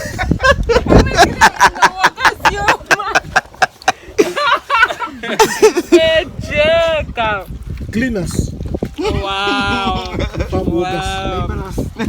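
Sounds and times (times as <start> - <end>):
people laughing: 0.0 - 6.3, 9.0 - 10.9.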